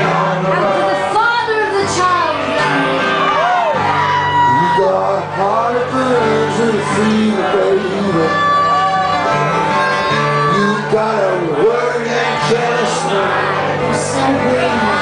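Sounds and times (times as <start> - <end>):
bass notes: 0.0 - 15.0
guitar: 0.0 - 15.0
live band playing: 0.0 - 15.0.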